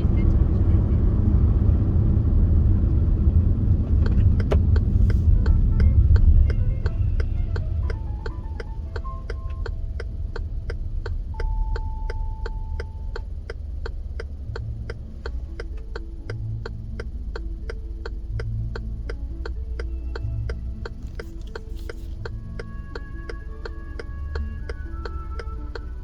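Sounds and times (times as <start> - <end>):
car rumbling on road: 0.0 - 26.0
faint car radio music: 0.0 - 26.0
steady ticking: 3.2 - 26.0.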